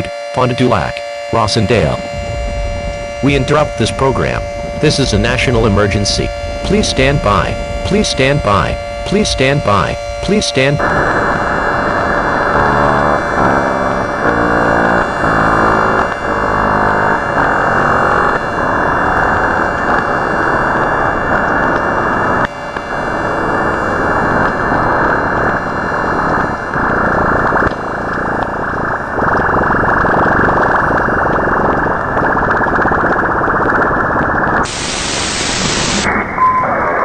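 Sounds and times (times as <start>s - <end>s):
tones jumping in pitch: 0.0s - 18.6s
harsh electronic static: 0.0s - 37.0s.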